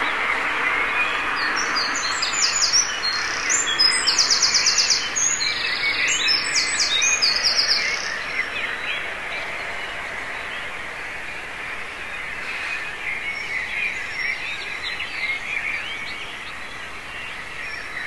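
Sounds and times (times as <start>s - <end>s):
bird singing fast trills: 0.0s - 18.0s
faint birds chirping: 0.0s - 18.0s.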